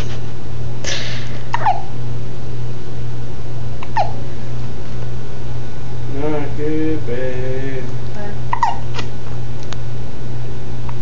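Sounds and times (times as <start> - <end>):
steady low hum: 0.0 - 11.0
baby hiccuping: 1.6 - 1.9, 3.8 - 4.2, 8.5 - 9.0.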